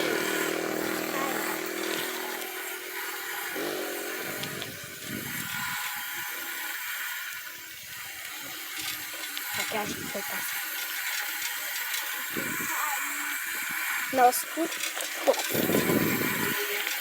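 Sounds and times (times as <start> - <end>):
faint voices: 0.0 - 5.6, 12.2 - 17.0
small engine running: 0.0 - 17.0.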